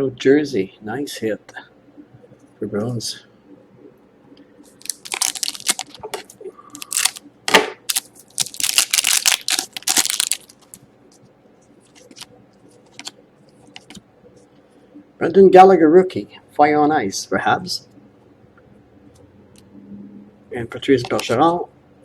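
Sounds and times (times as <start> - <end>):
packaging crinkling and tearing: 4.8 - 10.8, 11.9 - 13.1.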